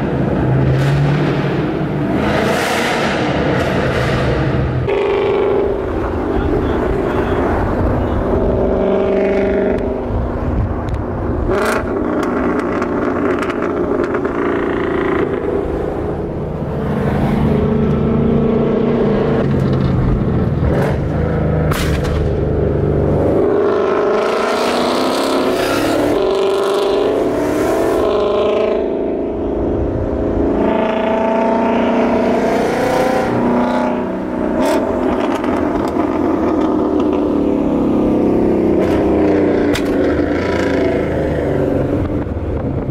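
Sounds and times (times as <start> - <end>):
car engine revving: 0.0 - 42.9
exhaust cracks: 38.8 - 40.8.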